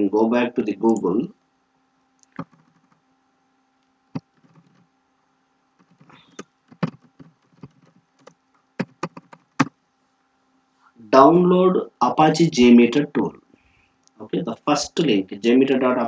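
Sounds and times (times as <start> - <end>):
faint steady hum: 0.0 - 16.0
keyboard and mouse clicks: 2.2 - 3.0, 4.2 - 4.8, 5.8 - 9.7.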